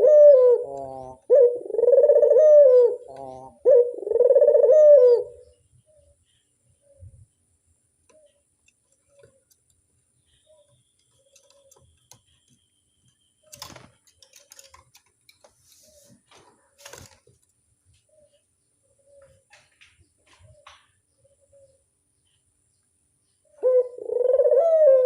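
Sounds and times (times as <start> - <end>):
clusters of clicks: 10.9 - 17.6.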